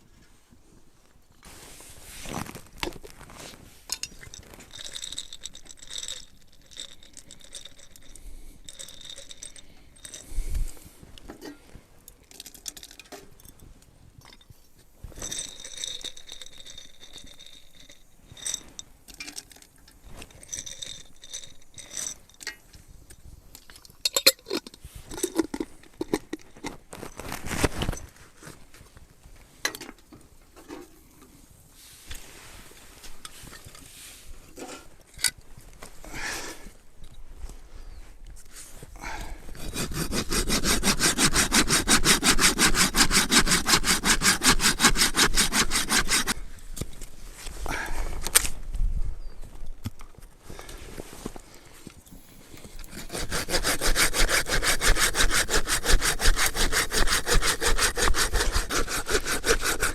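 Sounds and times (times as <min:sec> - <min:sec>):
small hard objects clinking: 0:03.9 - 0:10.4, 0:15.1 - 0:22.6.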